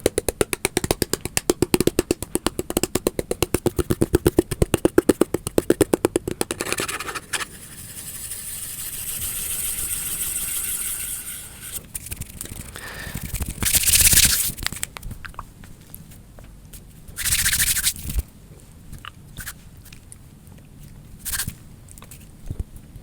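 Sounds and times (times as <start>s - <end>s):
rapid even tapping: 0.0s - 11.8s
hissing rub or scratch: 6.6s - 14.6s
scattered scrapes: 6.6s - 14.6s
loud brushing sweep: 6.7s - 11.9s.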